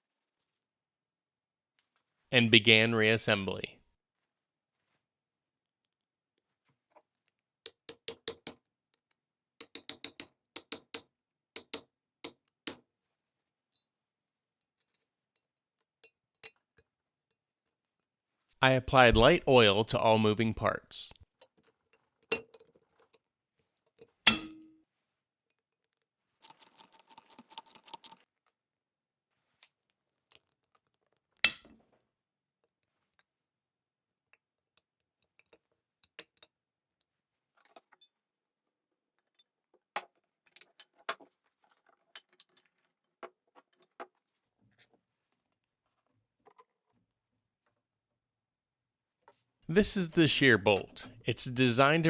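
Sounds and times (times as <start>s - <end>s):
metal parts clinking: 26.4s - 28.2s.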